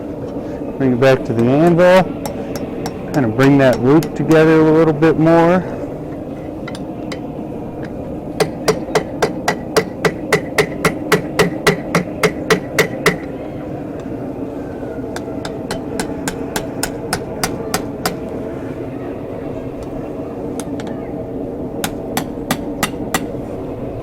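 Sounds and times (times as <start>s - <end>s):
hammer striking metal on anvil: 1.3s - 4.4s, 6.1s - 13.3s, 15.2s - 18.2s, 21.8s - 23.3s.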